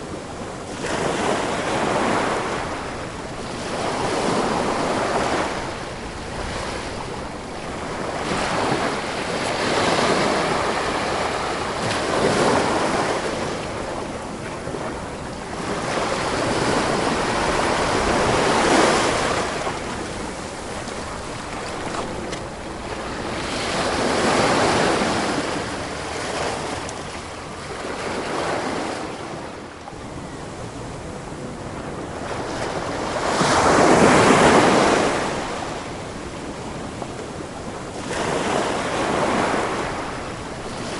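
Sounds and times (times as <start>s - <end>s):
ocean waves breaking on shore: 0.0s - 40.9s.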